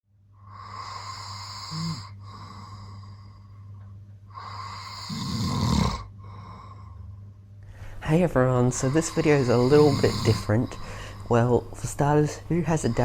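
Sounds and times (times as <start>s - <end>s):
steady low hum: 0.1s - 13.0s
man snoring: 0.4s - 3.6s, 4.3s - 7.1s, 8.7s - 11.8s, 12.4s - 13.0s.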